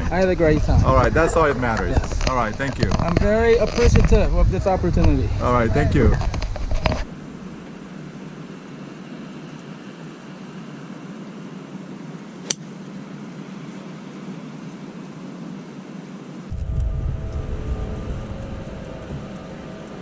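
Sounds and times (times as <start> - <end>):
fan or air conditioning noise: 0.0 - 20.0
low rumble: 16.5 - 20.0.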